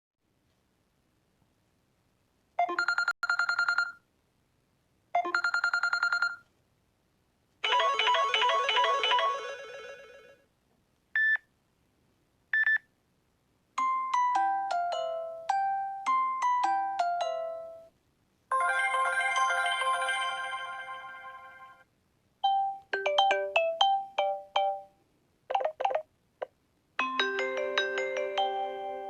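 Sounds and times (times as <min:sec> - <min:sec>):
electronic trill ringtone: 0:07.6 - 0:10.4, 0:18.5 - 0:21.8
quick ringtone tune: 0:07.6 - 0:10.4, 0:18.5 - 0:21.8, 0:27.0 - 0:29.0
melodic chime: 0:18.5 - 0:21.8, 0:27.0 - 0:29.0.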